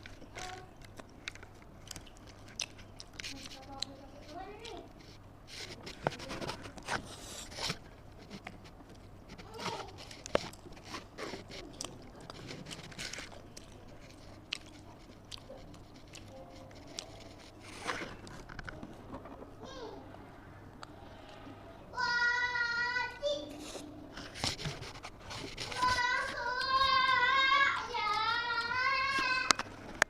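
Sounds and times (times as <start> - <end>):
close chewing and biting: 0.0 - 18.8
mouth clicks and crunches: 0.0 - 19.3.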